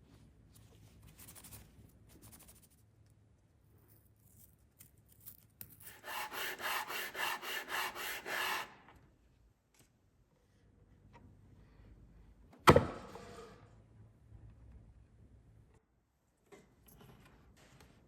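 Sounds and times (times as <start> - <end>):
hand sanding rasping strokes: 5.9 - 8.8.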